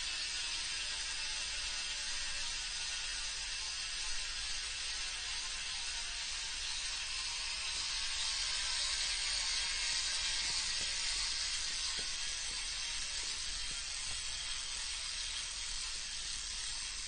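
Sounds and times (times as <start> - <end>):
bicycle freewheel ticking: 0.0 - 17.0.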